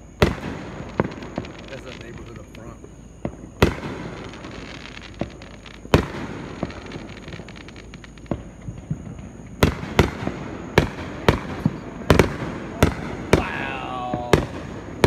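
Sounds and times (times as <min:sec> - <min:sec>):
fireworks bangs and pops: 0:00.0 - 0:15.0.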